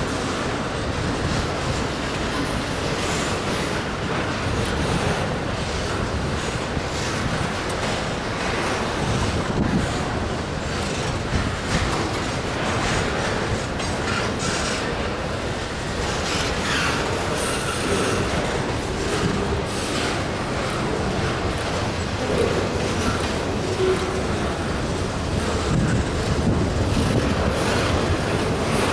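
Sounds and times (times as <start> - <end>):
train wheels rumbling and rattling: 0.0 - 28.9
faint wheel squeals: 13.8 - 24.8.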